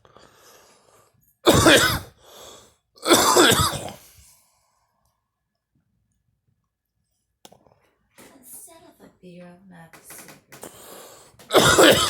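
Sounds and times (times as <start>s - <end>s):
person coughing: 1.4s - 2.1s, 3.0s - 4.0s, 11.5s - 12.0s.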